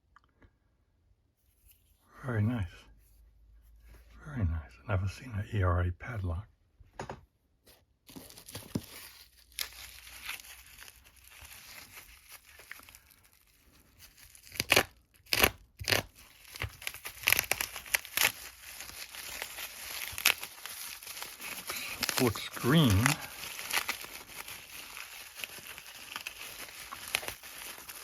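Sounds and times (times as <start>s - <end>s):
wrapping crinkled and torn: 8.1s - 28.0s.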